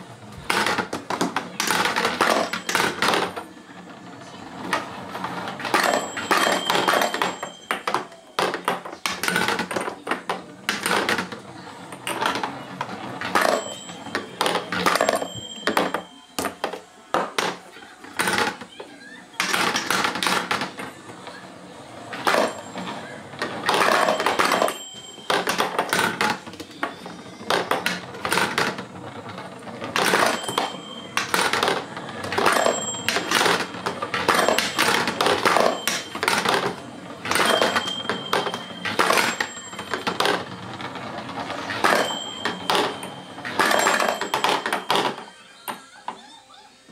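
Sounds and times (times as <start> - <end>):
plastic balls clattering: 0.4 - 18.7, 22.1 - 45.3
chime ringing: 13.4 - 16.4, 23.8 - 25.8, 30.0 - 40.6, 41.4 - 45.2.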